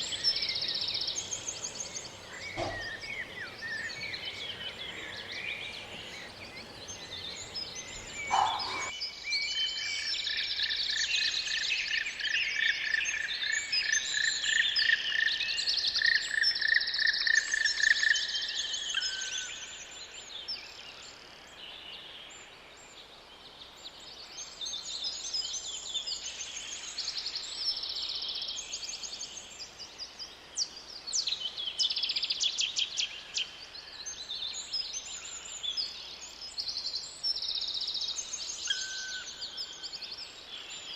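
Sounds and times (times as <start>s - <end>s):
songbirds chirping and trilling: 0.0s - 40.9s
bird repeating one note: 8.0s - 8.9s.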